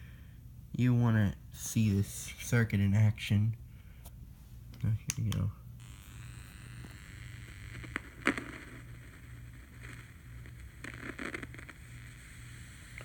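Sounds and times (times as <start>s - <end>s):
pulsing electrical buzz: 5.8s - 13.0s.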